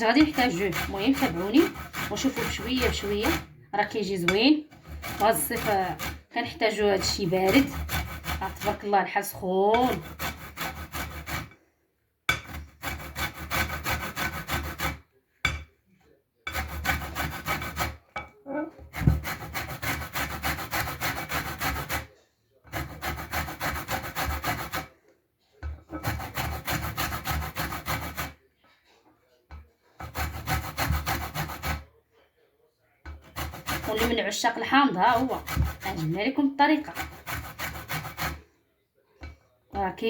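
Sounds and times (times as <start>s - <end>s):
lemon peel grated on metal grater: 0.0s - 9.0s, 9.7s - 11.5s, 12.4s - 15.0s, 16.5s - 18.1s, 18.9s - 22.1s, 22.7s - 24.9s, 26.0s - 28.4s, 30.0s - 31.8s, 33.2s - 36.2s, 36.8s - 38.4s.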